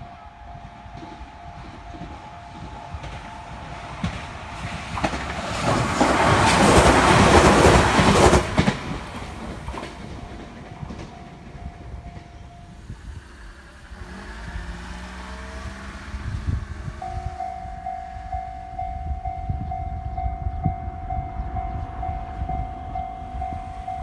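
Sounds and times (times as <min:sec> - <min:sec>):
crossing alarm tone: 0:00.0 - 0:05.8, 0:09.2 - 0:13.2, 0:16.8 - 0:24.0
train wheel and rail noise: 0:00.0 - 0:24.0.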